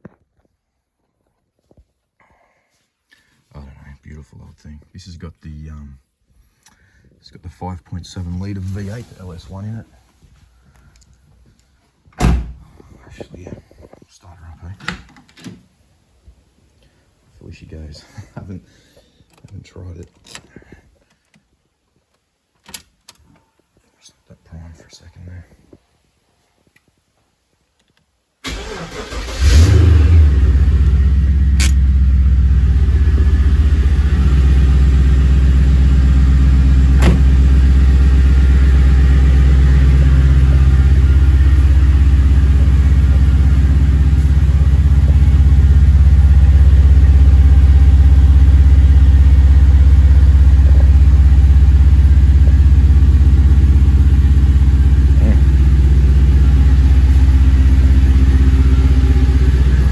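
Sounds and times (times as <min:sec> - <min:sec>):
car engine starting and idling: 0:08.0 - 0:09.8, 0:28.4 - 0:59.9.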